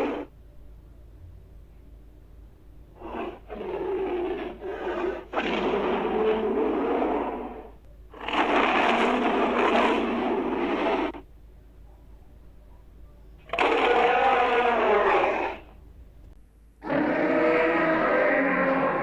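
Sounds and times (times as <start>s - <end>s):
raspy creature growl-hisses: 0.0s - 0.3s, 16.8s - 19.0s.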